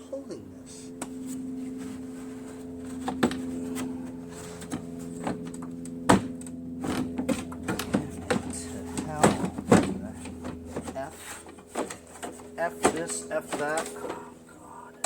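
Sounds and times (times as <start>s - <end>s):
steady low hum: 0.0s - 15.0s
clicks and knocks on plastic shroud: 2.9s - 14.4s.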